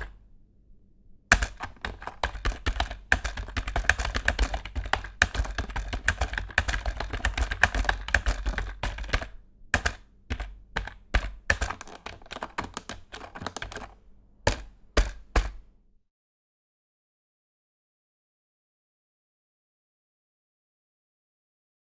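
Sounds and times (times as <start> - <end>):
fast typing on computer keyboard: 1.3 - 15.6.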